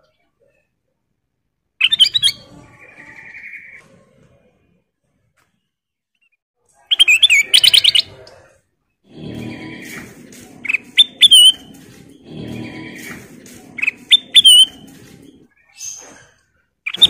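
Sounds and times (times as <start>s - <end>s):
bird chirping: 1.8s - 3.8s, 6.2s - 8.4s, 9.1s - 17.0s
buzzy bird trill: 9.1s - 16.2s.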